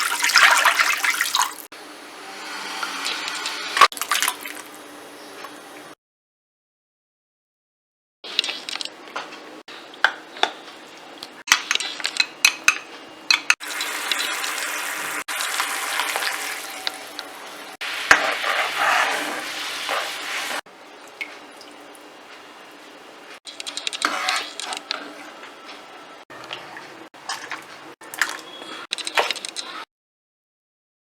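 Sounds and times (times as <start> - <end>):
cooking hiss: 13.6 - 20.7.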